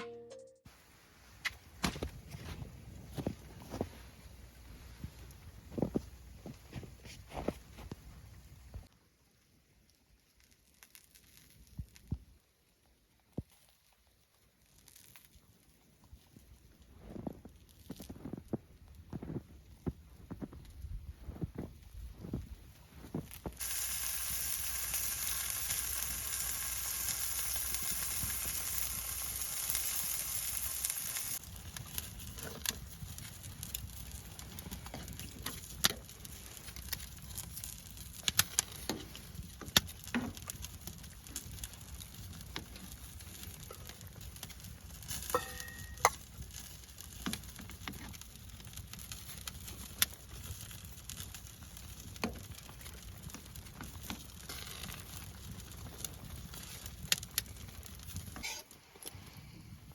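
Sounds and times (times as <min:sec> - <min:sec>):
sharp pops and crackles: 0:01.3 - 0:59.5
food sizzling in a pan: 0:23.5 - 0:31.4, 0:45.0 - 0:46.2.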